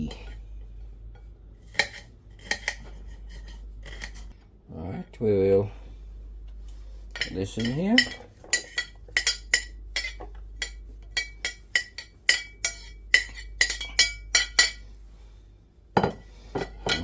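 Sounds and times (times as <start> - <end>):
utensil clinking against bowl: 1.7 - 4.3, 7.1 - 15.0, 16.0 - 17.0.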